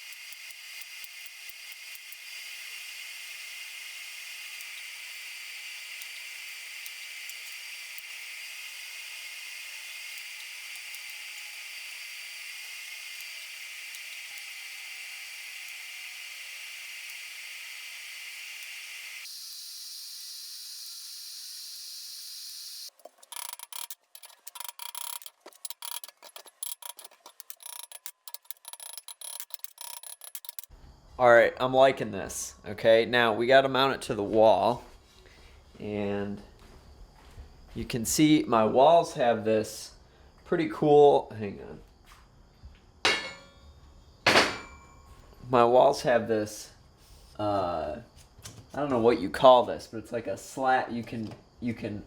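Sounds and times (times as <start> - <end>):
drill boring into steel: 0.0 - 30.7
rapid irregular clicks: 23.2 - 30.7.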